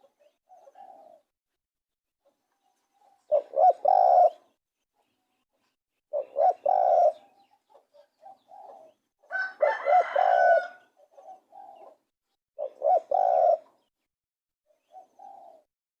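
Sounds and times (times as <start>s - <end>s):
dove cooing: 0.0s - 1.3s, 3.1s - 4.5s, 6.1s - 7.4s, 8.0s - 12.0s, 12.6s - 13.8s, 14.8s - 15.7s.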